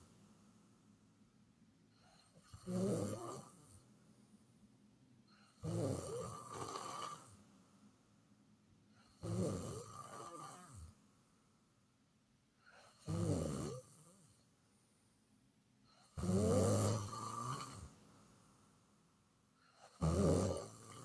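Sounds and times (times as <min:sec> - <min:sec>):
quiet breathing: 0:00.0 - 0:11.0
person snoring: 0:02.5 - 0:03.6, 0:05.6 - 0:07.3, 0:16.2 - 0:17.9, 0:20.0 - 0:21.0.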